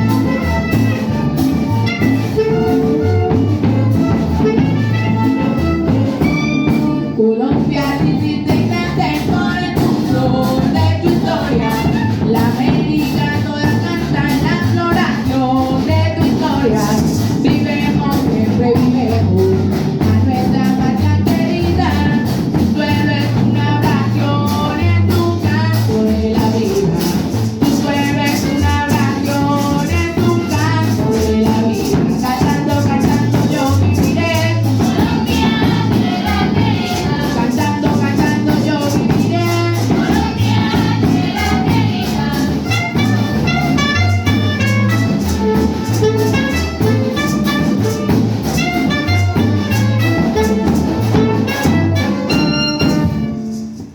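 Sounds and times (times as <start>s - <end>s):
rattle-like percussion: 0.0s - 7.0s, 7.7s - 53.9s
orchestra playing cumbia: 0.0s - 53.9s
voices singing: 6.3s - 47.4s.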